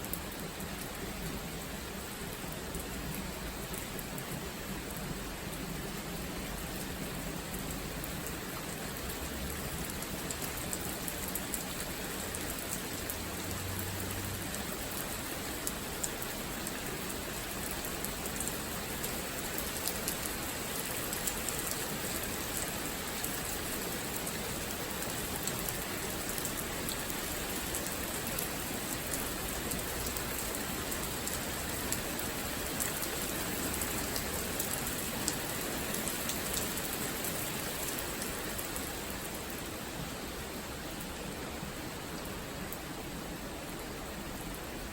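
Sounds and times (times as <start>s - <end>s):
raindrops ticking on surfaces: 0.0s - 44.9s
steady rain falling: 0.0s - 44.9s.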